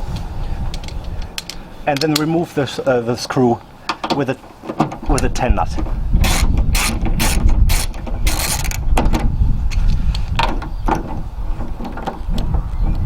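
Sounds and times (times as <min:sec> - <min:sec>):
ratchet wrench clicking: 0:06.2 - 0:08.8.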